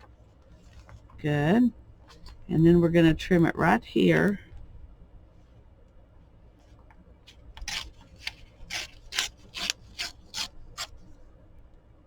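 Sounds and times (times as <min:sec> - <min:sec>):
scissors cutting paper: 0:07.6 - 0:10.9.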